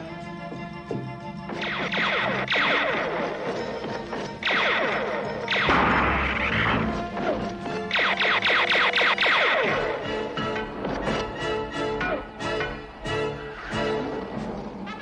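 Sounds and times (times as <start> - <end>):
dramatic music score: 0.0 - 15.0
crash: 4.2 - 6.9.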